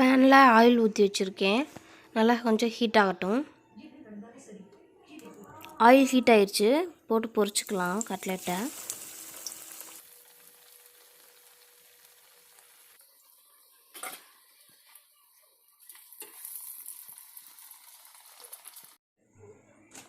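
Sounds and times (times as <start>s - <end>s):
oil sizzling in a pan: 7.4s - 19.0s.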